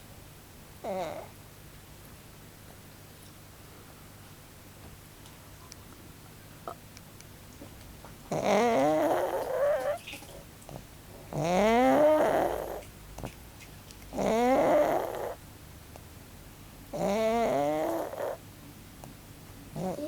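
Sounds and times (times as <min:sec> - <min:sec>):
dog snoring loudly: 0:00.8 - 0:01.3, 0:08.3 - 0:10.0, 0:10.7 - 0:13.3, 0:14.1 - 0:15.4, 0:16.9 - 0:18.4, 0:19.7 - 0:20.0.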